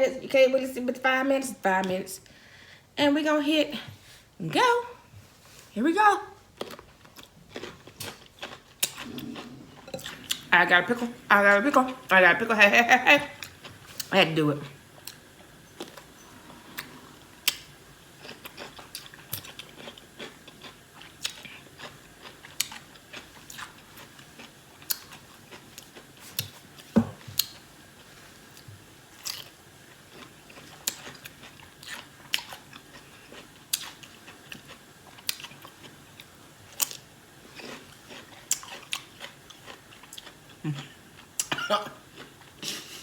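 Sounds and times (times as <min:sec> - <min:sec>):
person crunching a pickle: 0:06.6 - 0:10.5, 0:15.8 - 0:25.1.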